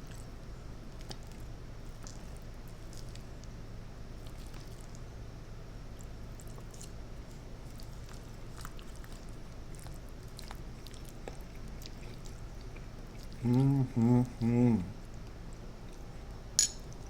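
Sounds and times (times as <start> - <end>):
steady low hum: 0.0 - 17.0
wet mouth chewing clicks: 7.7 - 16.1.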